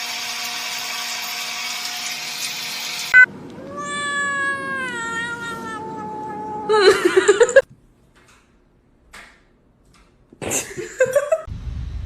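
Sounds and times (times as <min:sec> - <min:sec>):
cat meowing: 0:03.6 - 0:06.9.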